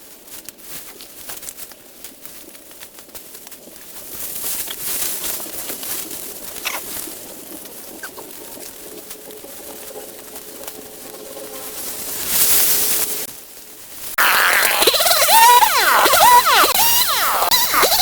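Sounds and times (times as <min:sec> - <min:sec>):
bird calling: 0:06.6 - 0:09.0, 0:14.2 - 0:18.0.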